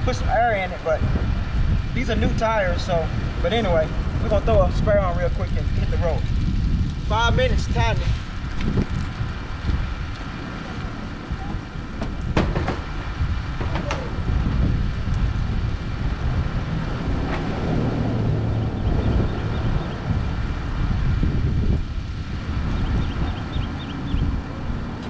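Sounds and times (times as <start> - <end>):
sharp clicks and knocks: 12.0 - 14.1.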